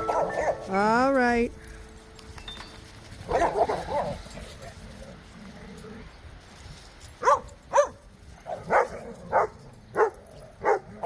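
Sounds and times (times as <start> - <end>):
dog barking: 0.0 - 0.6, 3.3 - 4.2, 7.2 - 11.0.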